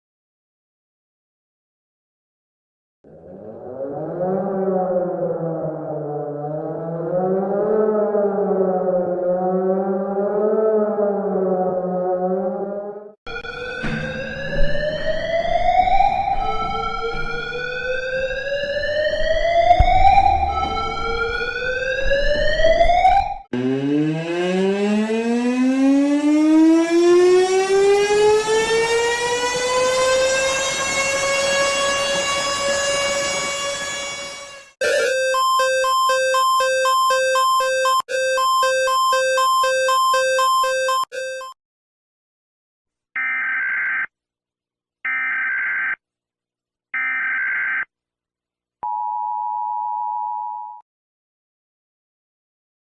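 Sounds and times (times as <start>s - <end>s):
rising emergency siren: 3.1s - 41.6s
alarm: 13.3s - 18.8s, 34.8s - 41.6s, 43.2s - 44.1s, 47.0s - 47.9s
two-tone alert signal: 34.8s - 41.6s.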